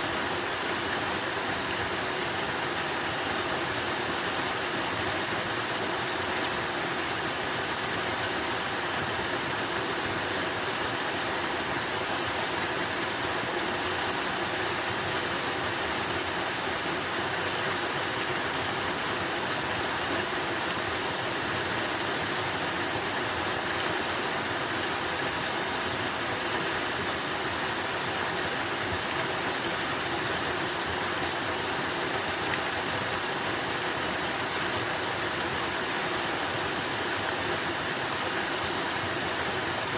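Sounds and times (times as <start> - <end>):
running water: 0.0 - 39.9.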